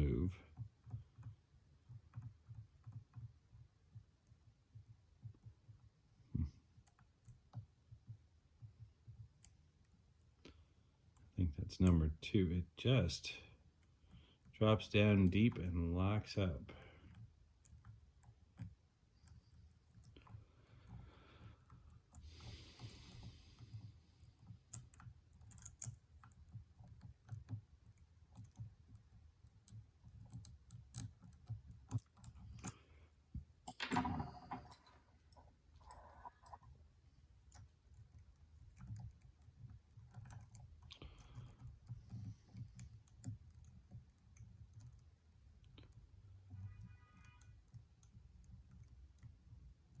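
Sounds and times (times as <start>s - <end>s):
lock picks clicking and scraping: 17.0s - 50.0s.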